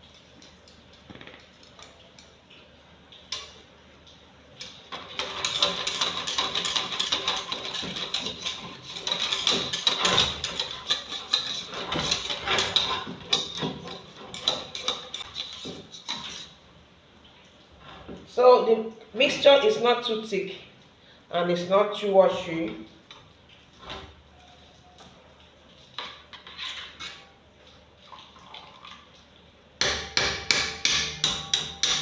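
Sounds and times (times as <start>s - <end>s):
batter stirred in bowl: 4.9s - 16.6s
utensil beating against bowl: 29.8s - 32.0s.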